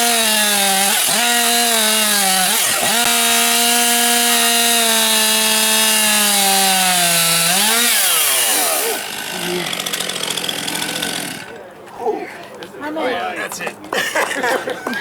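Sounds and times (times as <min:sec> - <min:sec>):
chainsaw cutting log: 0:00.0 - 0:11.6.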